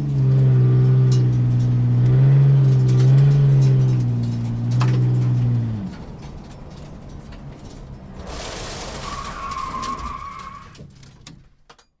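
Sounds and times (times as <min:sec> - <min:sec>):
road and tyre rumble: 0:00.0 - 0:11.9
brakes hissing and squealing: 0:07.6 - 0:10.9.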